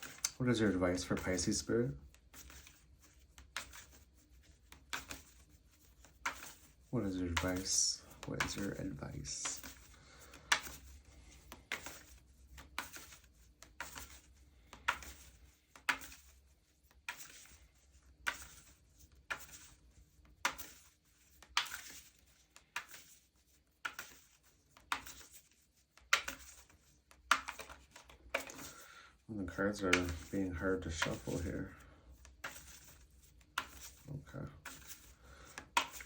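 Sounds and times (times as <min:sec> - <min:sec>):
cards being shuffled by hand: 0:00.0 - 0:36.0.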